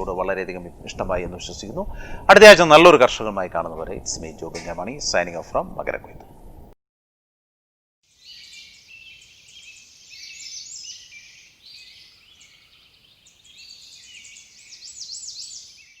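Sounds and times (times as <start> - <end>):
small birds chirping: 8.1 - 16.0.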